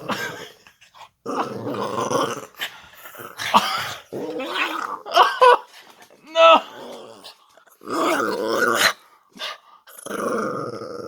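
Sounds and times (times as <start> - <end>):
dog growling in play: 0.0 - 5.6, 6.3 - 11.0.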